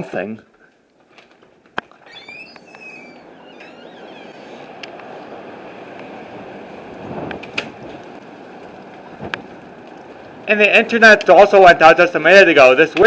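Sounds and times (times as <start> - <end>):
strong wind rushing: 4.6 - 8.1.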